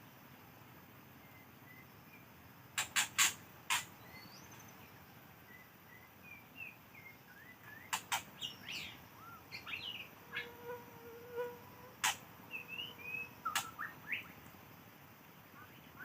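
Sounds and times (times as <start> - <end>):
birds chirping: 1.0 - 16.0
loud sharp clicks: 2.8 - 3.9, 7.9 - 8.3, 12.0 - 12.2, 13.5 - 13.9.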